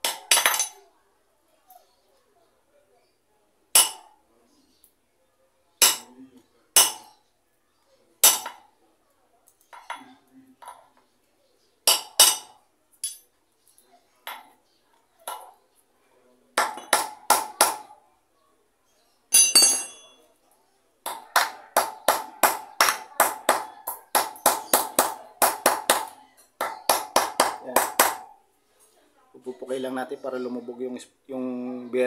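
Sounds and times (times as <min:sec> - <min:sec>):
metallic clink: 0:12.2 - 0:13.3, 0:19.3 - 0:20.3.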